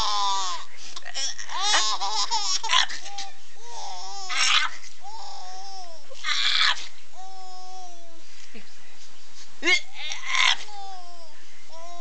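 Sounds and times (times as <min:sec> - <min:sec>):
baby laughing and squealing: 0:01.2 - 0:08.0.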